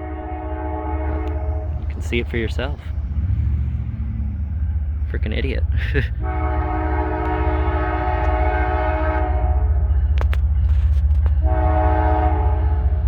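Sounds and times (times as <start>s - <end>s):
locomotive air horn: 0.0s - 2.6s, 6.2s - 13.0s
passing train rumble: 0.0s - 13.0s.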